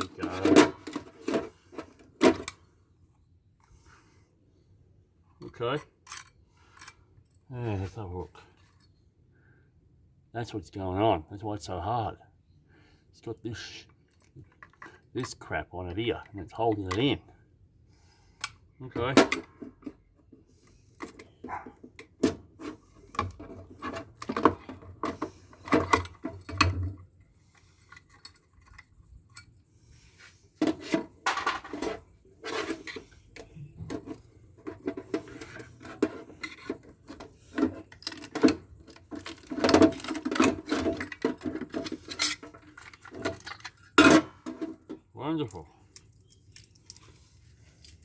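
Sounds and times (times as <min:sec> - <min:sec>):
hand tools clattering on metal: 0:00.0 - 0:01.5, 0:30.6 - 0:45.0.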